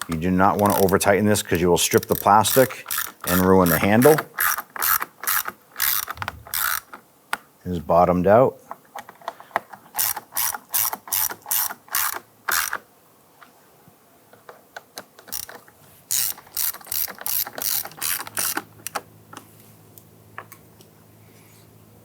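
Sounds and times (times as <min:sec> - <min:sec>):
ratchet pawl clicking: 0:00.0 - 0:01.1, 0:01.9 - 0:07.0, 0:10.0 - 0:12.8, 0:15.3 - 0:19.0.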